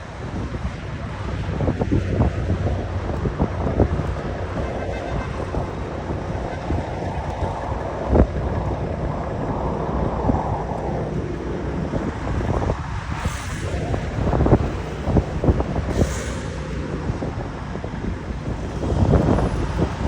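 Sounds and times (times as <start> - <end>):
wind buffeting microphone: 0.0 - 20.0
brief hiss: 15.9 - 16.8.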